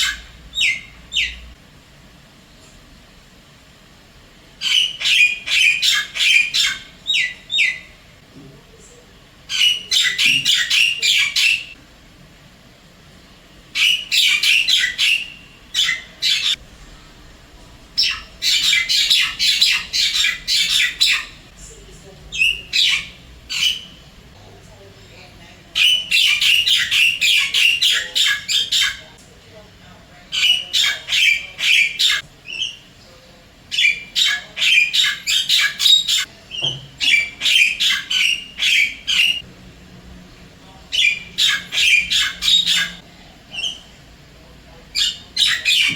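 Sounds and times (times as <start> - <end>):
myna bird harsh chattering calls: 4.6 - 8.1, 9.4 - 11.8, 13.8 - 16.7, 17.8 - 21.6, 22.3 - 24.4, 25.8 - 29.2, 30.3 - 32.9, 33.7 - 39.5, 40.9 - 43.0, 45.0 - 45.9.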